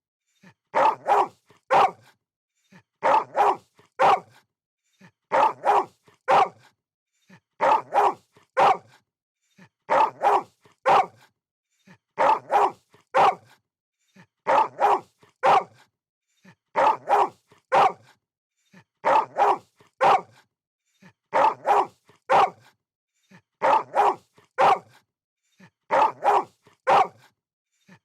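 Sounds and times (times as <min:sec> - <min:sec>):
dog barking: 0:00.7 - 0:02.2, 0:03.0 - 0:04.4, 0:05.3 - 0:06.7, 0:07.6 - 0:09.0, 0:09.9 - 0:11.3, 0:12.2 - 0:13.6, 0:14.5 - 0:15.9, 0:16.8 - 0:18.2, 0:19.0 - 0:20.4, 0:21.3 - 0:22.7, 0:23.6 - 0:25.0, 0:25.9 - 0:27.3.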